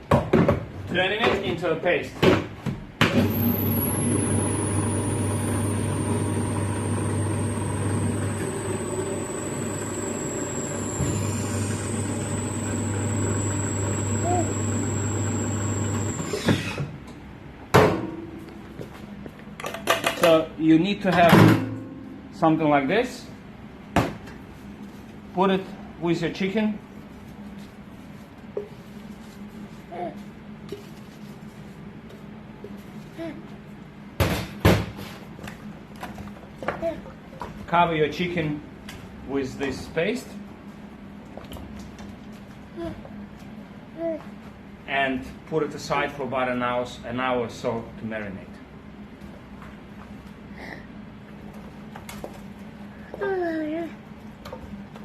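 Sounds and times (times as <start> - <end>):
electric blender running: 3.1 - 16.8.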